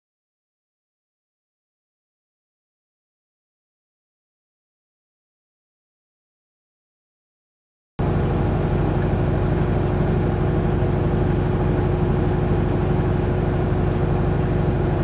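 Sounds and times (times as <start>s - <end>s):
washing machine humming: 8.0s - 15.0s.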